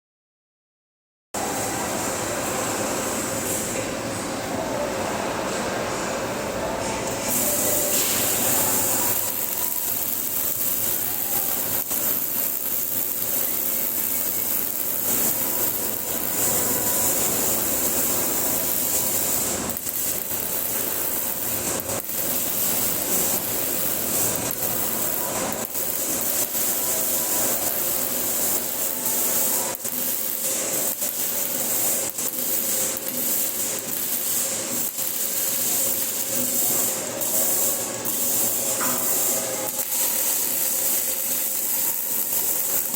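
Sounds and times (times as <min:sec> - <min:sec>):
welder arc crackling: 0:07.0 - 0:42.9.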